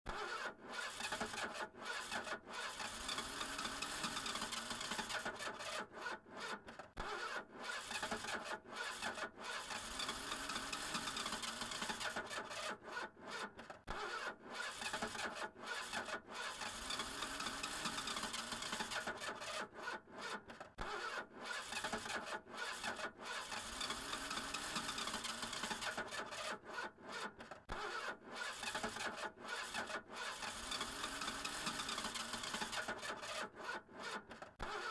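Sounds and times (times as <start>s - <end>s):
car starter motor cranking: 27.4s - 33.4s.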